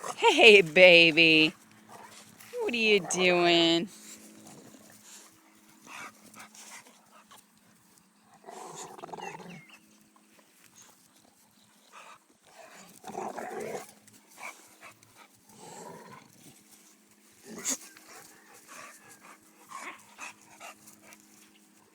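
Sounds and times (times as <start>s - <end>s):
dogs growling while tussling: 8.4s - 9.6s, 12.5s - 14.6s, 15.4s - 16.6s.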